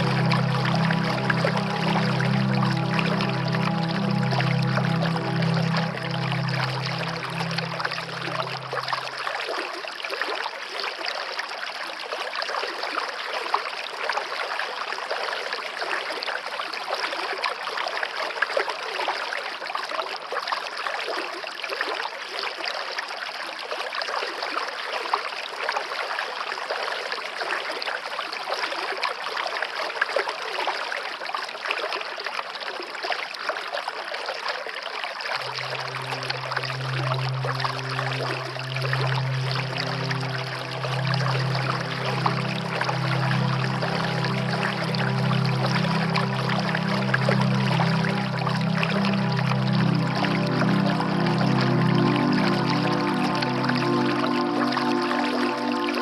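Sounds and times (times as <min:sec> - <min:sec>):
waterfall rushing: 0:00.0 - 0:09.3, 0:35.4 - 0:56.0
low sustained music tone: 0:00.0 - 0:10.2, 0:35.3 - 0:56.0.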